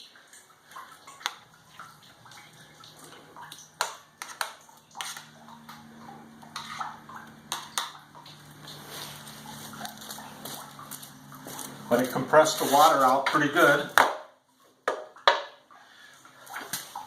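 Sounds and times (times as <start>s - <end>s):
water dripping: 0.0s - 17.0s
metal pans clinking: 3.0s - 14.2s.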